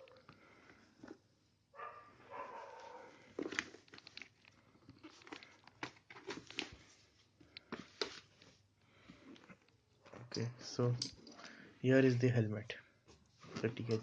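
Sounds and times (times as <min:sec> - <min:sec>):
cloth bag rustling: 0:13.4 - 0:14.0.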